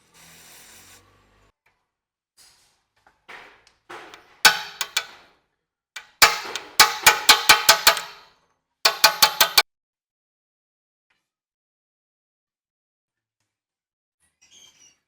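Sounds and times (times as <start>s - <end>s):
ringing metal clangs: 4.5s - 5.2s, 6.0s - 8.2s, 8.9s - 9.6s.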